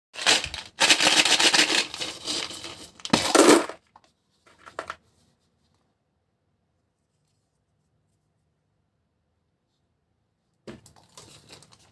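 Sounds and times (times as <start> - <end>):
plastic packaging crinkling and tearing: 0.2 - 3.4.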